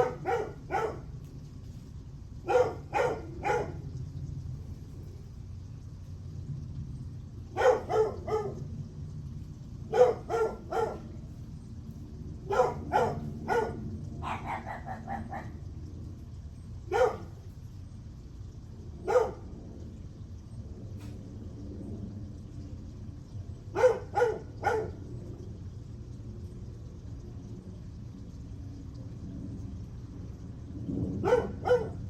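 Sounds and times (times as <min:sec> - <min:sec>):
dog barking: 0:00.0 - 0:01.1, 0:02.4 - 0:03.8, 0:07.5 - 0:08.6, 0:09.9 - 0:11.2, 0:12.4 - 0:15.6, 0:16.9 - 0:17.4, 0:19.0 - 0:19.5, 0:23.7 - 0:25.0, 0:31.2 - 0:32.0
dog yapping: 0:00.0 - 0:01.1, 0:02.5 - 0:03.8, 0:07.6 - 0:08.6, 0:09.9 - 0:11.2, 0:12.5 - 0:15.6, 0:16.9 - 0:17.4, 0:19.0 - 0:19.5, 0:23.8 - 0:25.0, 0:31.2 - 0:32.0.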